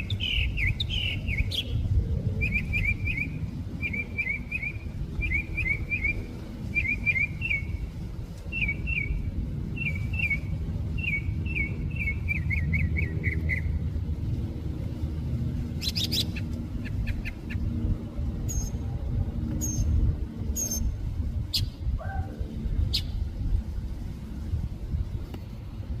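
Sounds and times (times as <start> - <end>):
mockingbird singing: 0.0 - 1.8
steady low rumble: 0.0 - 26.0.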